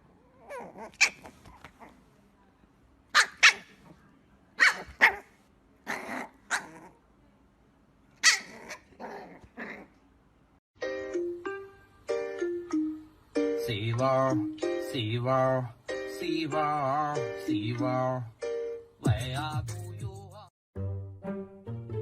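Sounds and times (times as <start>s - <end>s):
dog barking: 3.2s - 3.8s, 4.6s - 5.3s, 8.2s - 8.8s.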